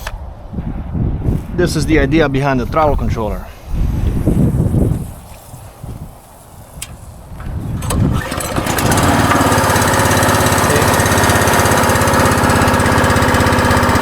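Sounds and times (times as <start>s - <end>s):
gas engine starting and running: 4.3s - 14.0s.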